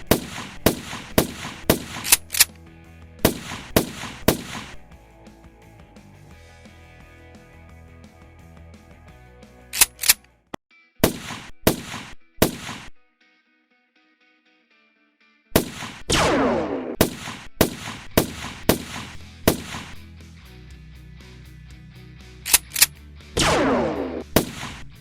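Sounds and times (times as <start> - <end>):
blaster shots: 0.0 - 2.5, 3.2 - 4.9, 11.0 - 13.0, 15.6 - 20.0, 23.4 - 25.0
background music: 0.0 - 10.5, 17.6 - 25.0.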